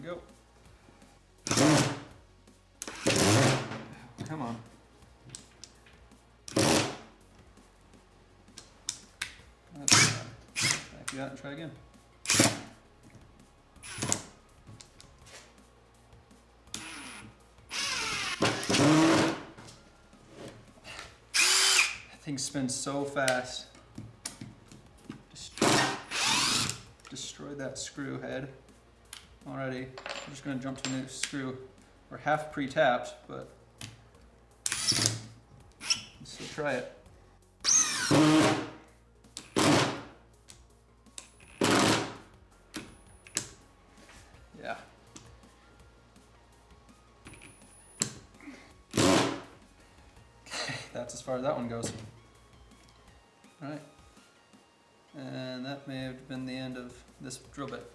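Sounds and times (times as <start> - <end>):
impact driver driving screw: 1.5 - 2.0, 2.8 - 3.8, 6.5 - 7.0, 9.9 - 10.9, 12.3 - 12.7, 13.8 - 14.3, 16.8 - 19.5, 21.4 - 22.0, 25.6 - 26.8, 34.7 - 35.2, 35.8 - 36.1, 37.7 - 38.7, 39.4 - 40.1, 41.4 - 42.2, 48.9 - 49.4
impact driver running: 16.8 - 19.5, 25.6 - 26.8, 37.7 - 38.7, 41.6 - 42.2, 48.9 - 49.4.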